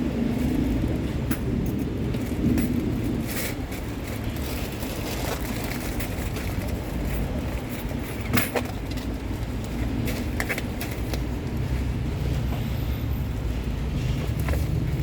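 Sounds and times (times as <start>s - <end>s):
steady low rumble: 0.0s - 8.3s.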